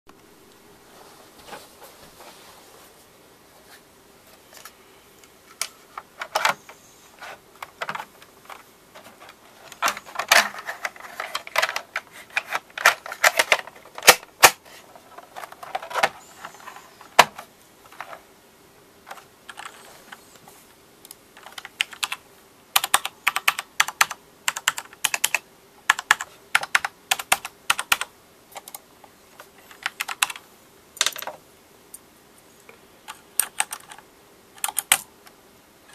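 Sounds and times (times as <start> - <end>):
mechanical keyboard typing clacks: 22.8 - 28.8, 33.4 - 34.0, 34.6 - 35.0.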